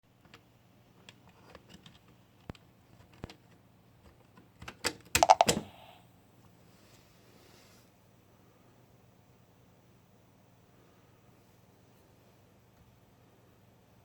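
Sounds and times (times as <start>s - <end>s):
doorbell speaker crackling: 5.2s - 5.9s
sharp clicks: 5.2s - 5.9s.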